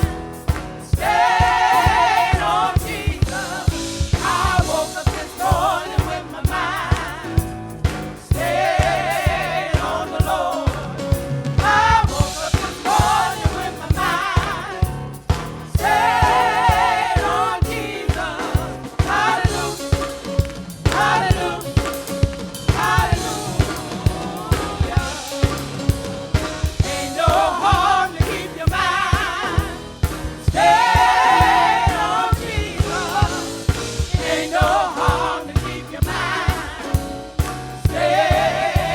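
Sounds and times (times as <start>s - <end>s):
band with steady drum beat: 0.0s - 38.9s
gospel choir singing: 0.0s - 38.9s.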